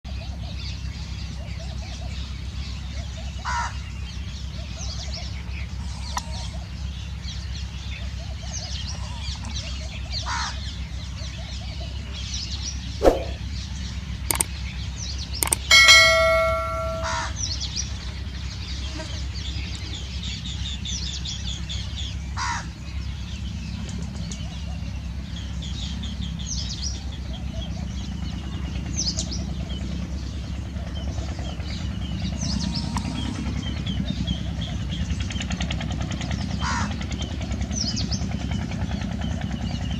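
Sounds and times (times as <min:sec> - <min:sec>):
sparrows chirping: 0:00.1 - 0:39.9
sharp clicks: 0:14.3 - 0:14.5, 0:15.4 - 0:17.2
ringing bell-like tone: 0:15.4 - 0:17.4.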